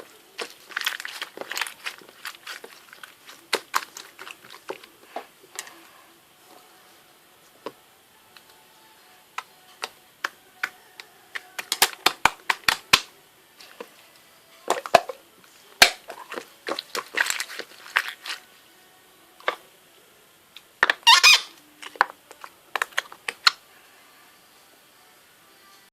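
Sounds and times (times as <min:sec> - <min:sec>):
crinkling crackling rustle: 0:00.0 - 0:06.6, 0:16.1 - 0:18.6.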